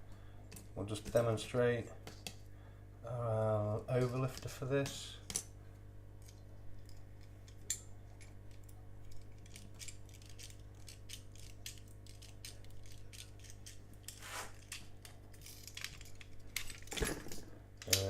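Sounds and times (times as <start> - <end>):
steady low hum: 0.0 - 18.0
pick tools clicking in a padlock: 7.5 - 17.0.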